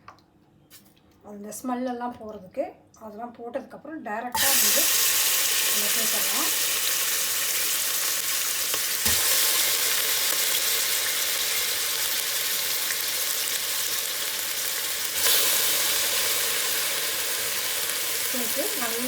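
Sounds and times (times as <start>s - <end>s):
chicken sizzling in hot oil: 4.4s - 19.0s.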